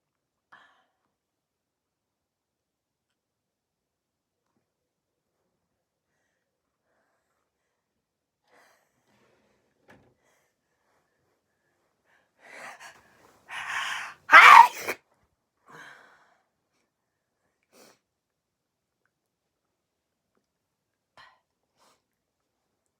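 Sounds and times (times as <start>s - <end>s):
person sneezing: 13.5s - 15.0s
sharp in-breaths: 13.5s - 15.0s.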